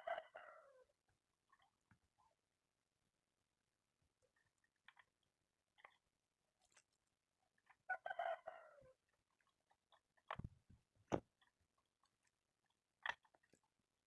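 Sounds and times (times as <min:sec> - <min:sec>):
rooster crowing: 0:00.0 - 0:00.8, 0:07.9 - 0:08.9.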